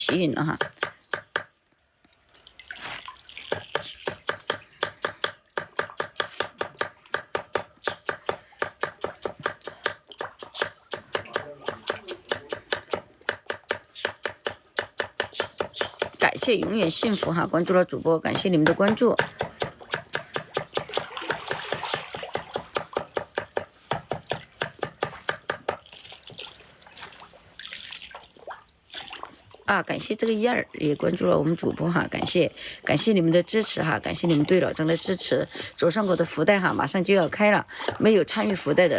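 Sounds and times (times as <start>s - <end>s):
faint watery sound: 1.6s - 4.8s, 25.8s - 38.9s.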